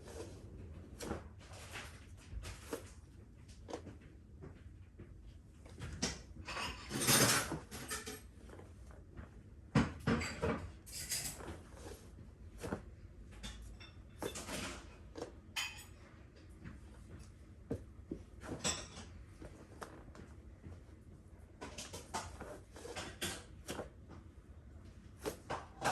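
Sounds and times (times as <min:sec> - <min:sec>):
clothing rustling: 0:00.0 - 0:04.0, 0:06.9 - 0:09.6, 0:10.6 - 0:25.9.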